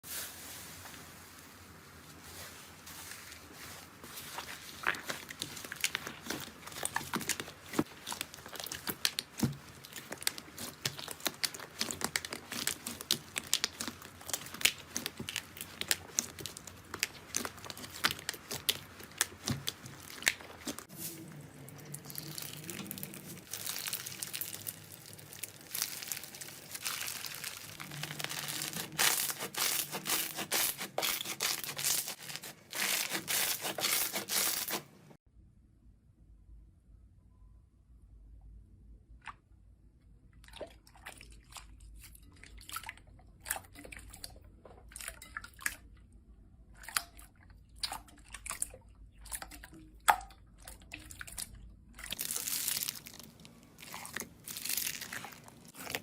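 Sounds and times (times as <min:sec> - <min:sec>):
slime squeezed by hand: 0:22.0 - 0:34.8, 0:52.1 - 0:56.0.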